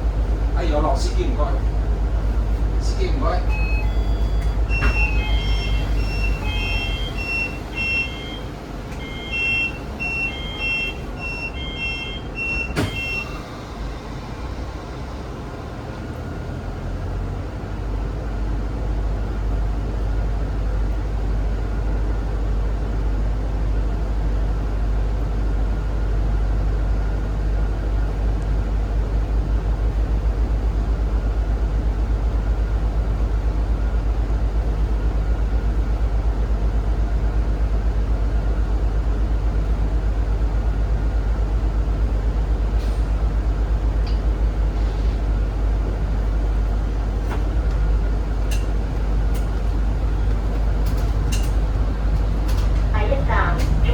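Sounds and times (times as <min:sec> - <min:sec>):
bus drivetrain drone: 0:00.0 - 0:53.9
electronic warning beep: 0:03.4 - 0:13.4.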